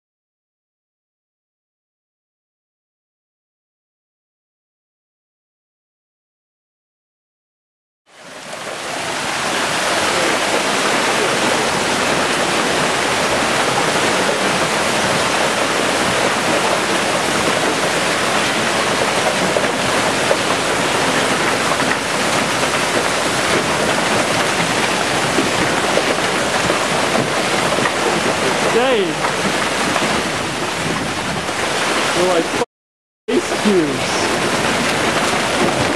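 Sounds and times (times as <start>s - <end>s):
hail and rain pouring down: 8.1s - 32.6s, 33.3s - 35.9s.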